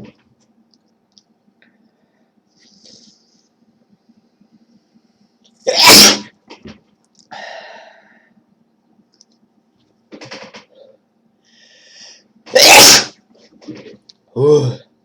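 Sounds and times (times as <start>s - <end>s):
person sneezing loudly: 5.7s - 6.3s, 12.5s - 13.2s
breathy sound: 7.3s - 8.3s.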